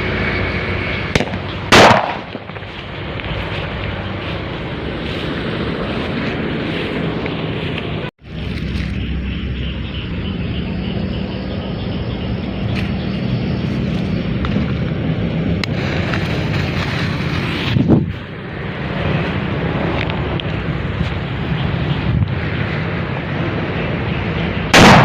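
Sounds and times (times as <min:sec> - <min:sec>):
steady rumbling noise: 0:00.0 - 0:25.0
distant fireworks popping: 0:01.0 - 0:08.0
loud bang: 0:01.1 - 0:02.6, 0:24.7 - 0:25.0.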